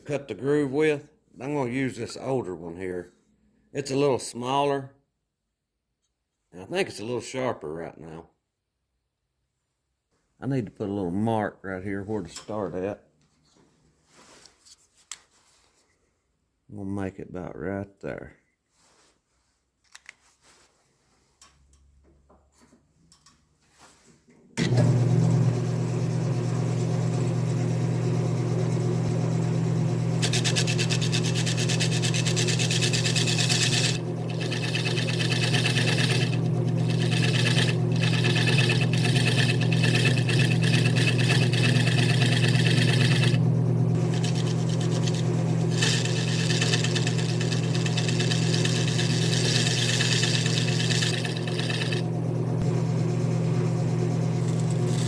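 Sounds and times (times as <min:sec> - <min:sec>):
lathe tool scraping wood: 0:24.6 - 0:55.0
wood lathe motor humming: 0:24.6 - 0:55.0.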